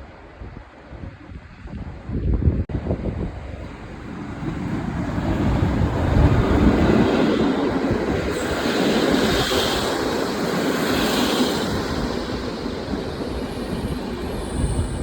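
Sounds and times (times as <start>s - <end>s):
wind on microphone: 0.4s - 15.0s
passenger train passing: 2.7s - 15.0s.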